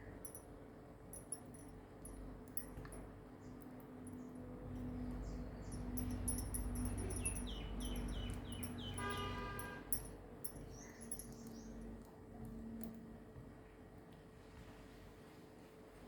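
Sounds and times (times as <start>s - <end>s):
low steady hum: 0.0s - 16.0s
small bird chirping: 5.1s - 9.2s.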